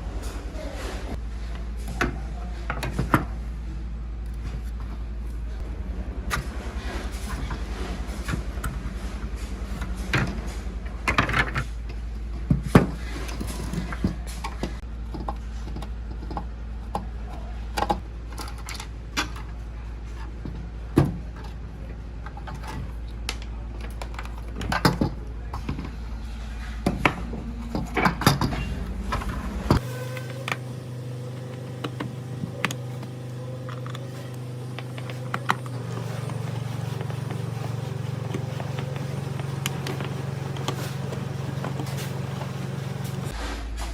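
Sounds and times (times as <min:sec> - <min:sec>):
steady low hum: 0:00.0 - 0:43.9
metal parts and tools clinking: 0:13.0 - 0:20.6, 0:26.6 - 0:30.7.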